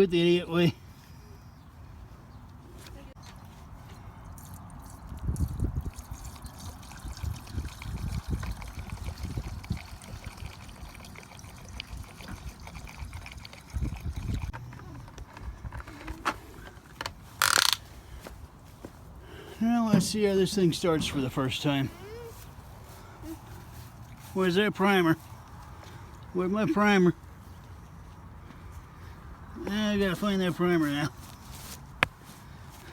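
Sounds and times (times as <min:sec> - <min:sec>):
gasoline pouring into tank: 0:04.4 - 0:14.5
sharp clicks: 0:17.0 - 0:17.8.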